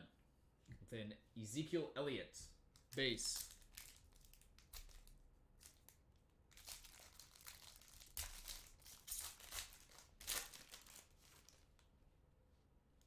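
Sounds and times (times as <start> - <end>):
card wrapper crinkling and rustling: 2.7 - 11.8.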